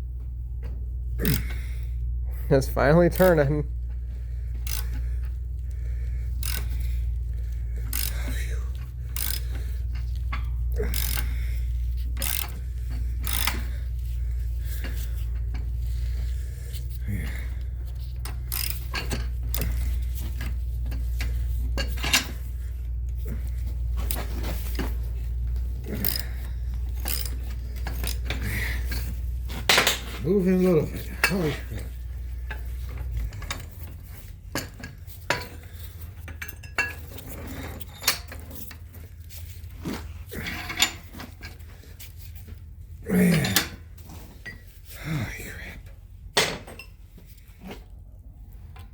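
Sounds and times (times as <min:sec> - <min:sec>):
steady low hum: 0:00.0 - 0:48.9
ratchet wrench clicking: 0:04.5 - 0:16.1, 0:16.7 - 0:22.5, 0:25.8 - 0:30.1
metallic clinks of hand tools: 0:07.9 - 0:09.6, 0:10.3 - 0:11.3, 0:18.2 - 0:19.9, 0:25.9 - 0:31.9.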